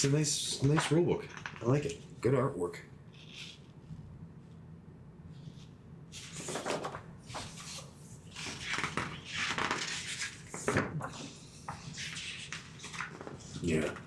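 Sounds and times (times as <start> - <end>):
paper pages rustling: 0.0 - 2.0, 6.1 - 14.0.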